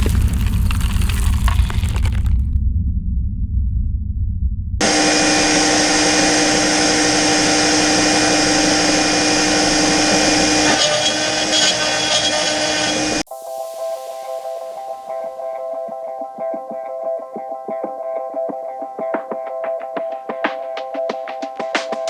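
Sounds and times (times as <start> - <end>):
router spindle whining: 4.8 - 13.3.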